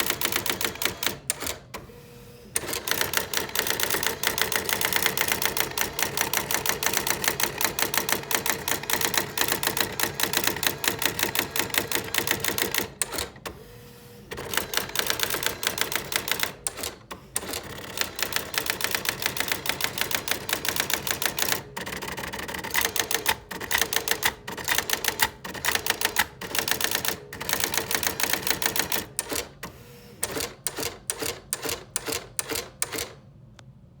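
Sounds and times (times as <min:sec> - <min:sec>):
typewriter striking characters: 0:00.0 - 0:01.6, 0:02.6 - 0:13.3, 0:14.4 - 0:29.5.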